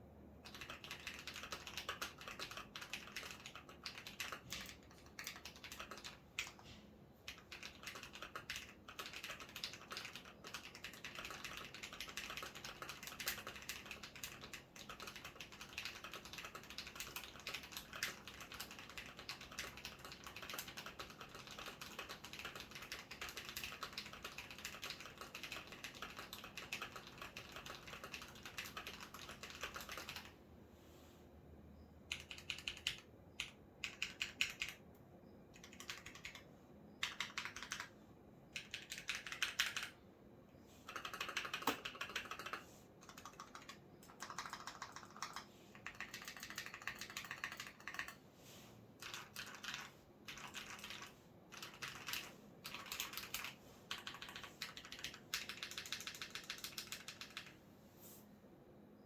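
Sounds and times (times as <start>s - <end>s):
mechanical keyboard typing: 0.4s - 30.4s, 32.1s - 34.8s, 35.5s - 37.9s, 38.5s - 40.0s, 40.9s - 48.2s, 49.0s - 57.6s.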